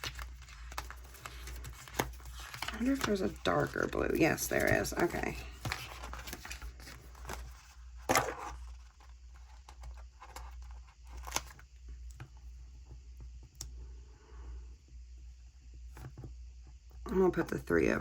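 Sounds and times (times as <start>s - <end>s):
paper rustling and peeling: 0.0s - 11.6s.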